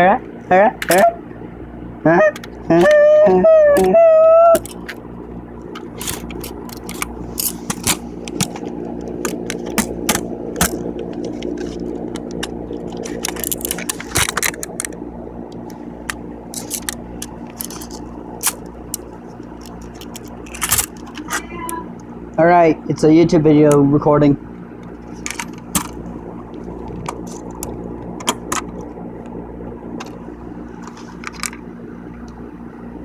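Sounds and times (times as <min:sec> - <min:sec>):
steady background hum: 0:00.0 - 0:33.0
small parts clicking and scraping: 0:00.8 - 0:01.1, 0:05.7 - 0:15.0, 0:15.6 - 0:21.5, 0:24.9 - 0:26.0, 0:30.8 - 0:31.6.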